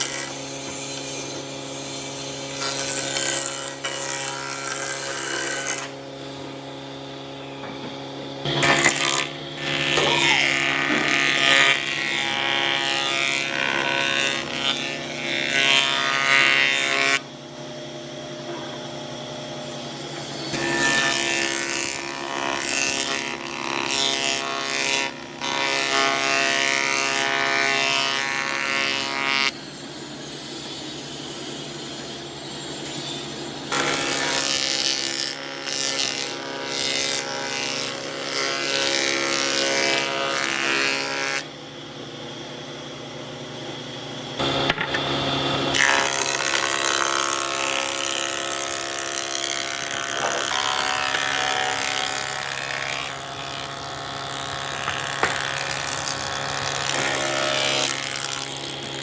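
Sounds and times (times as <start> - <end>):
tool cutting into wood: 0.0 - 6.0, 8.4 - 17.2, 44.4 - 59.0
power tool whining: 0.0 - 59.0.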